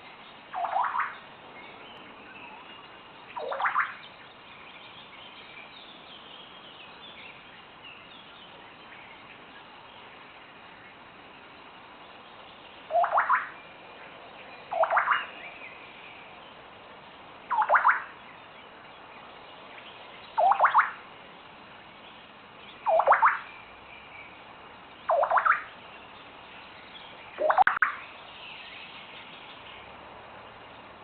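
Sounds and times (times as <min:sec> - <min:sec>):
bird of prey calling: 0:12.9 - 0:13.6, 0:14.7 - 0:15.4, 0:17.5 - 0:18.2, 0:20.4 - 0:21.0, 0:22.8 - 0:23.5, 0:25.1 - 0:25.8, 0:27.4 - 0:28.0.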